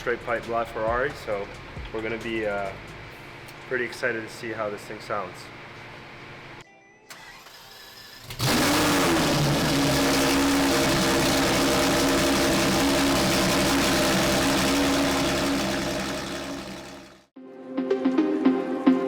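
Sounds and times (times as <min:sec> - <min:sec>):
car engine starting and idling: 0:07.1 - 0:17.3.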